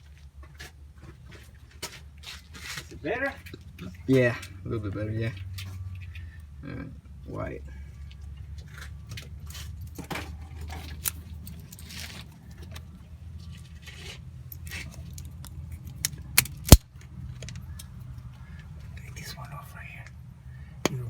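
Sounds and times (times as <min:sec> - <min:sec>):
metallic clicks of hand tools: 0:15.1 - 0:16.8.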